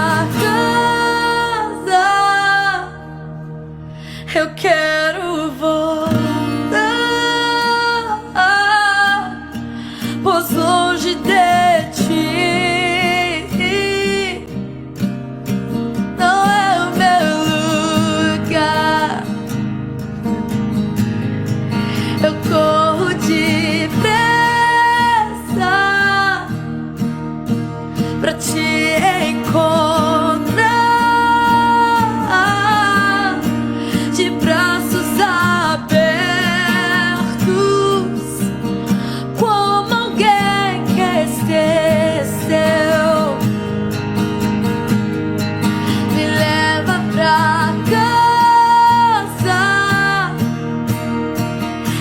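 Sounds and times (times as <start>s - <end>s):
person singing worship song: 0.0s - 3.2s
acoustic guitar accompaniment: 0.0s - 52.0s.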